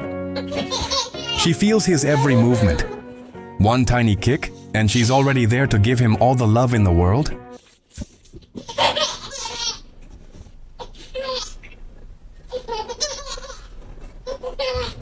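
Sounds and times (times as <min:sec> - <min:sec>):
baby laughing: 0:00.3 - 0:03.0, 0:08.6 - 0:09.8, 0:10.8 - 0:11.8, 0:12.5 - 0:15.0.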